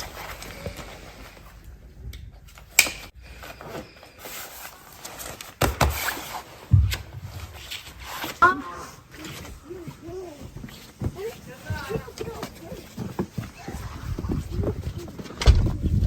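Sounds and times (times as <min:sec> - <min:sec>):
heavy deep thumps: 0:06.7 - 0:07.7.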